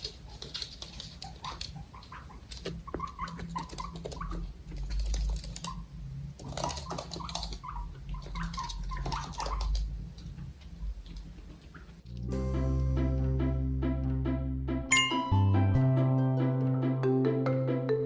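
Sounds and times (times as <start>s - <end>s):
guinea pigs squeaking: 0.0s - 12.2s.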